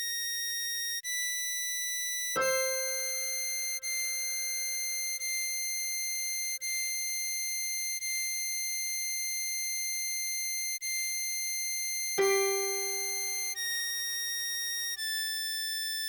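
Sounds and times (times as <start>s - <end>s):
harmonica melody: 2.4s - 5.4s, 12.2s - 13.6s.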